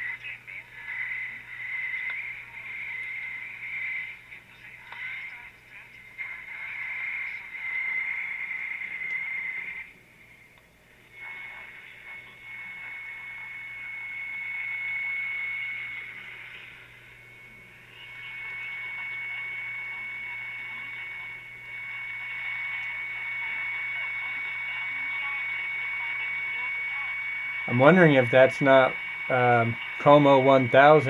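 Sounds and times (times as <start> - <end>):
faint radio voice: 0.0 - 9.7, 11.1 - 14.0, 17.8 - 31.0
radio static: 0.0 - 10.4, 11.0 - 31.0
high radio whistle: 6.7 - 9.9, 11.2 - 31.0.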